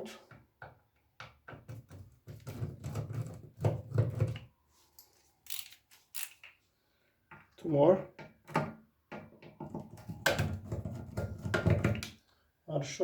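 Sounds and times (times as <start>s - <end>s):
screwdriver clicking and scraping metal: 5.5s - 6.6s.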